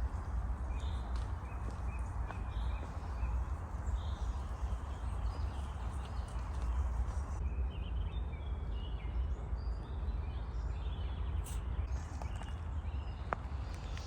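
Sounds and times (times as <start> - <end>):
steady low rumble: 0.0 - 8.8
small birds chirping: 0.0 - 14.0.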